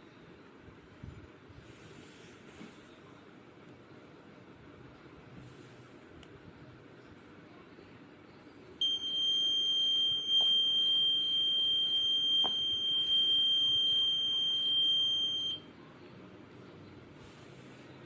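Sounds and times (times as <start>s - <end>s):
high-pitched alarm buzzer tone: 8.8s - 15.6s.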